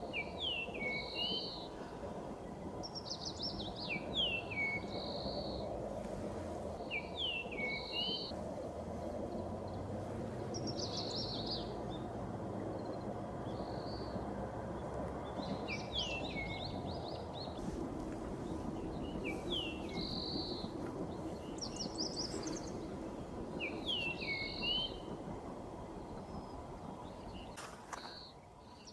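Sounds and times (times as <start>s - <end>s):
low background rumble: 0.0s - 28.9s
bird singing whistled notes: 0.1s - 1.7s, 2.9s - 5.7s, 6.9s - 8.4s, 10.5s - 11.7s, 15.4s - 17.6s, 18.8s - 22.9s, 23.6s - 25.1s.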